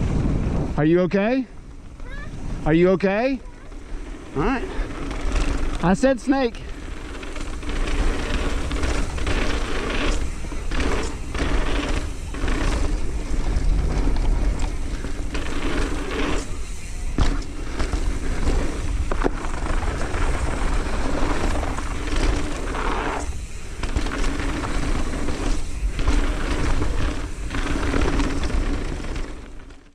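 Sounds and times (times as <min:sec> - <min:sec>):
wind rumble on microphone: 0:00.0 - 0:05.8
bike rattles and clicks: 0:00.0 - 0:29.9
bike tyre noise on dirt: 0:00.0 - 0:29.9.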